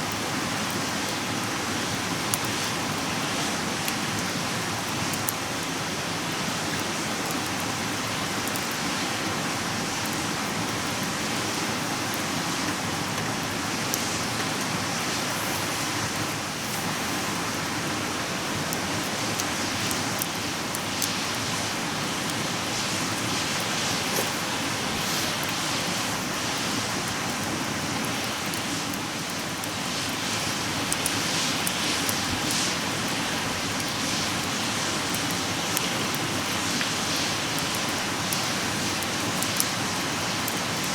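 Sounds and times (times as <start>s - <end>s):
campfire crackling and popping: 0.1s - 40.9s
fire hissing: 9.0s - 38.1s.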